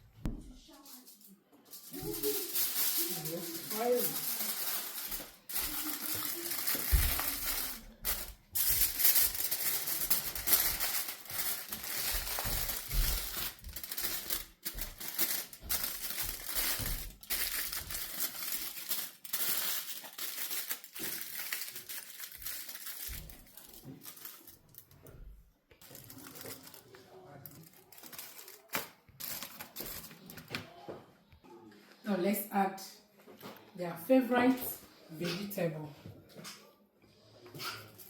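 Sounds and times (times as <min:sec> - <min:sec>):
aluminium foil crinkling: 0:00.7 - 0:30.7.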